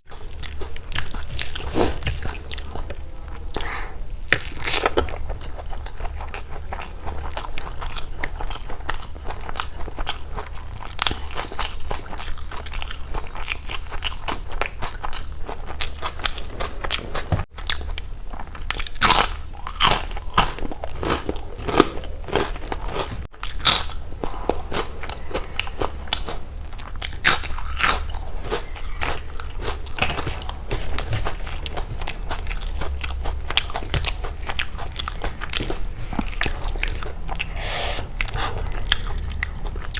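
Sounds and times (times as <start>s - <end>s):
person chewing food: 0.0s - 39.9s.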